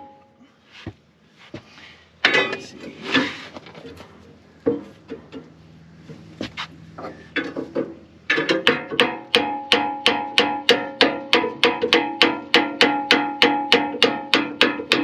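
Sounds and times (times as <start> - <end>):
metal knocks: 3.9 - 5.5, 7.0 - 15.0
hammer striking steel pin: 8.3 - 15.0.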